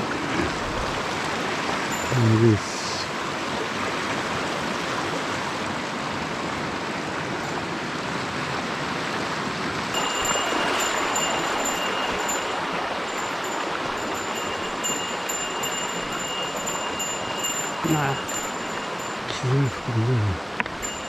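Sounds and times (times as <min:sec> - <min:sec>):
mountain stream rushing: 0:00.0 - 0:21.0
high thin ringing tone: 0:01.9 - 0:03.0, 0:09.9 - 0:21.0.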